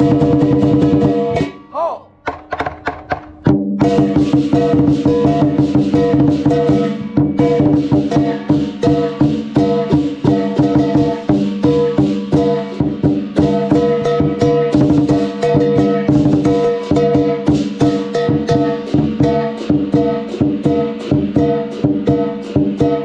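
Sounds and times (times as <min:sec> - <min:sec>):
drum beaten fast: 0:00.0 - 0:23.0
ringing gong: 0:03.8 - 0:20.8
crashing cymbals: 0:03.8 - 0:23.0.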